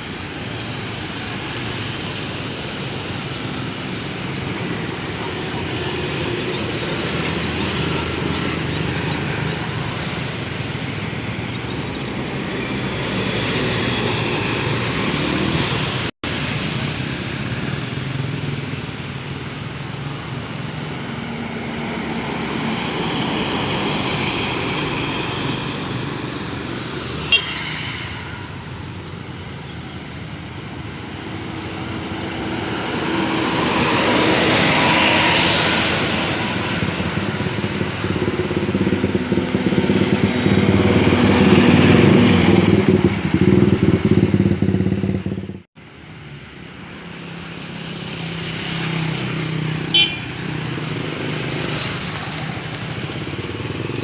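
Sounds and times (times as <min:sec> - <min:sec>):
bus engines running: 0:00.0 - 0:27.4, 0:28.1 - 0:54.0
vehicle horns tooting: 0:27.2 - 0:27.7, 0:49.9 - 0:50.3.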